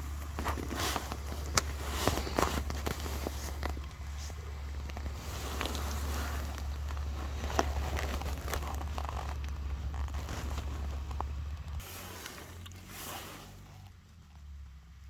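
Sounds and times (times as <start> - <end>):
clicks and knocks of handling: 0.0 - 11.8
rustling: 0.0 - 14.8
steady low hum: 0.0 - 15.0.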